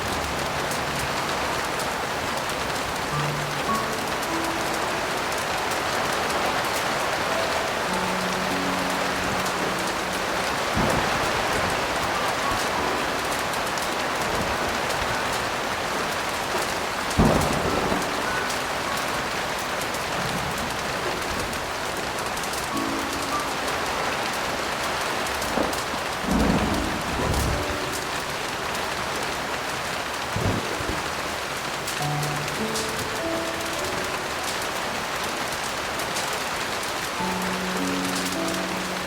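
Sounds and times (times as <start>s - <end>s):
heavy rain: 0.0s - 39.0s
soft piano notes: 0.0s - 39.0s
thunder: 5.7s - 21.7s, 25.2s - 29.2s, 30.2s - 33.2s.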